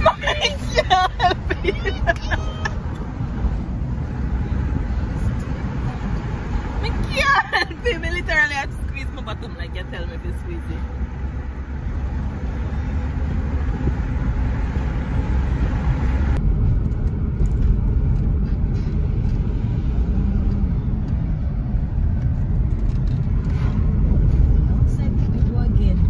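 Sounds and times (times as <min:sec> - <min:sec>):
road and engine rumble: 0:00.0 - 0:26.0.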